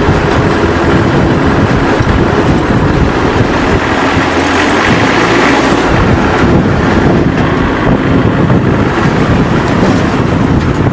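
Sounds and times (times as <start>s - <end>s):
hay baler running: 0.0s - 10.9s
rapid mechanical clatter: 0.0s - 10.9s.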